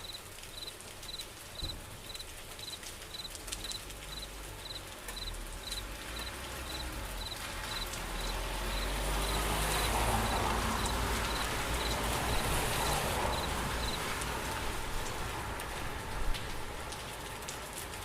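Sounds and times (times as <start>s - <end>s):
crickets chirping: 0.0s - 14.1s
rain hiss: 0.0s - 18.0s.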